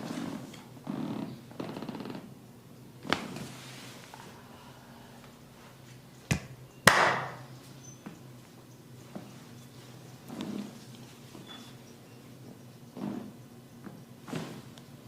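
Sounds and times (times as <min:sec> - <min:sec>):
percussive massage strikes: 0:06.3 - 0:07.5.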